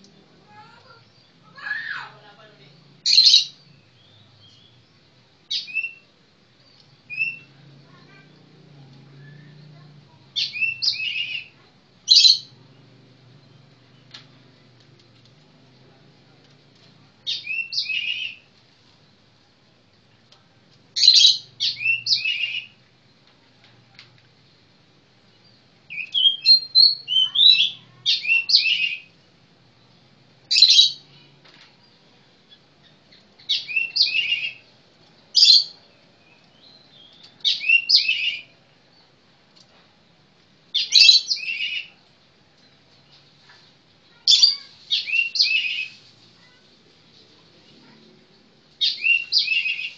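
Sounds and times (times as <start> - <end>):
bird singing whistled notes: 5.5 - 6.1, 7.1 - 7.5, 9.2 - 9.7, 10.4 - 11.5, 17.3 - 18.4, 21.0 - 22.8, 25.9 - 29.1, 33.5 - 34.7, 35.4 - 38.5, 40.8 - 42.0, 44.4 - 46.0, 48.8 - 49.9.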